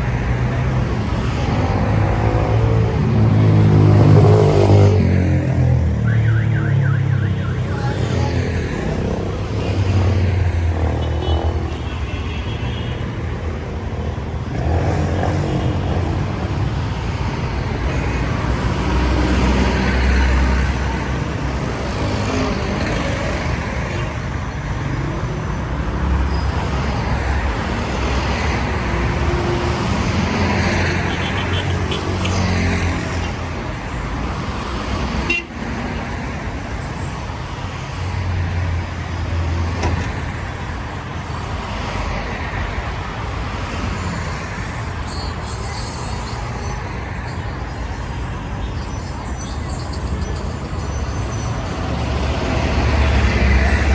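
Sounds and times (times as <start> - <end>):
vehicles passing: 0.0 - 53.9
car horn toots: 35.3 - 35.5.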